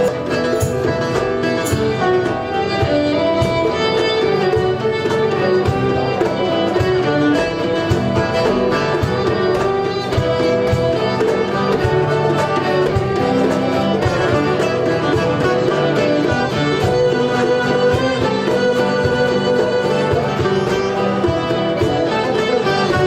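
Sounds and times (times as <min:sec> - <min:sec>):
bowed fiddle melody: 0:00.0 - 0:23.0
percussive beat: 0:00.0 - 0:23.0
plucked strings: 0:00.0 - 0:23.0.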